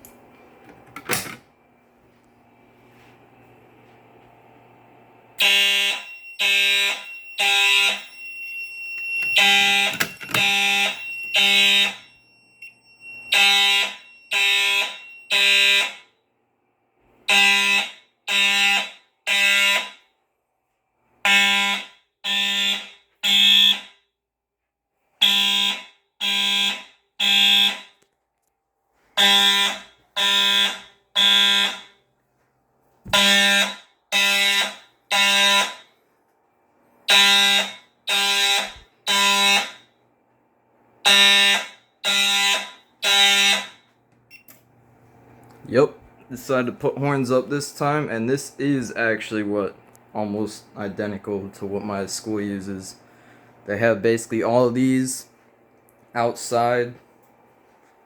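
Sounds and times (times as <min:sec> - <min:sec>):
fire alarm horns: 0:05.4 - 0:16.4, 0:17.1 - 0:20.4, 0:21.1 - 0:24.3, 0:25.1 - 0:28.2, 0:29.0 - 0:32.2, 0:33.1 - 0:36.1, 0:36.9 - 0:40.2, 0:41.0 - 0:44.5.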